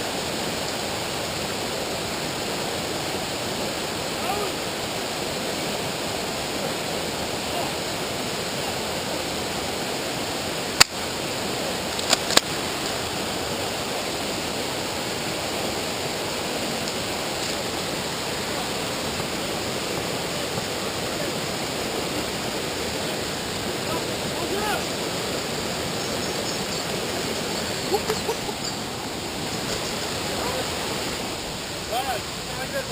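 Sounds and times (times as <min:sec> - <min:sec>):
river rushing: 0:00.0 - 0:32.9
sharp clicks: 0:11.9 - 0:12.5.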